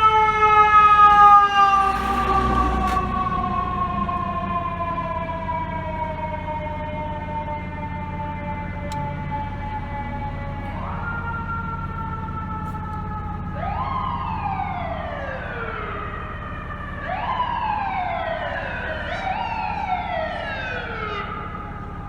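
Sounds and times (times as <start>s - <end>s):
steady low drone: 0.0s - 14.9s
mechanical siren winding up: 0.7s - 5.8s.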